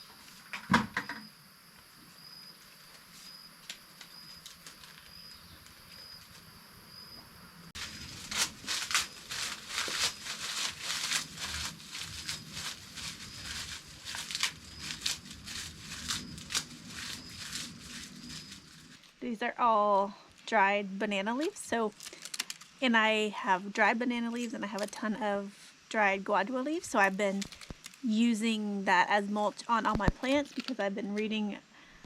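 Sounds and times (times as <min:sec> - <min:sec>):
insect chirping: 0:00.0 - 0:19.1
dry leaves crackling and rustling: 0:02.6 - 0:06.5, 0:07.8 - 0:19.2, 0:21.8 - 0:22.8, 0:29.8 - 0:30.8.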